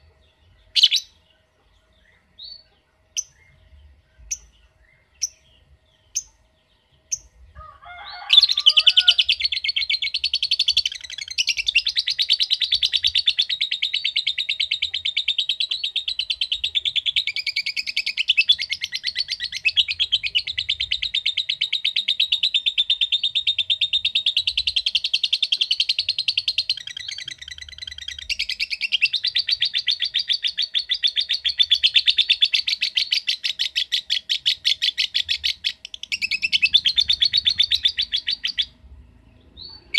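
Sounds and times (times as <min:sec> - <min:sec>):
lovebird rapid chattering call: 0:08.6 - 0:38.8.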